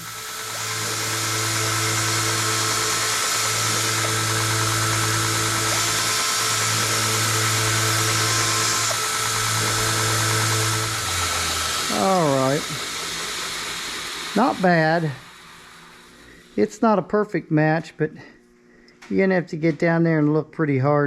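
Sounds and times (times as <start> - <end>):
power tool grinding steel: 0.0 - 16.8.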